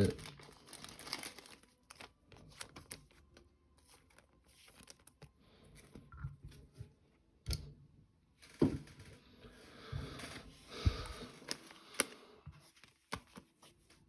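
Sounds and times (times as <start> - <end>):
cards being flipped through: 11.3 - 14.0.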